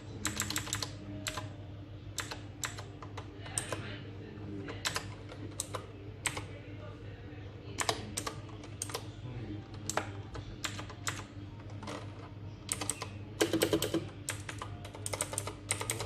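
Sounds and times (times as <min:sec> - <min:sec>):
clicky mechanical keyboard typing: 0:00.2 - 0:01.5, 0:02.2 - 0:03.8, 0:04.7 - 0:06.5, 0:07.8 - 0:09.1, 0:09.8 - 0:12.1, 0:12.7 - 0:16.0.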